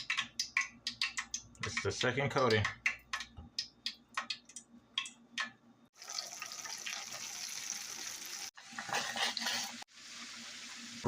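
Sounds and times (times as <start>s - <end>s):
food frying in hot oil: 5.9s - 11.0s.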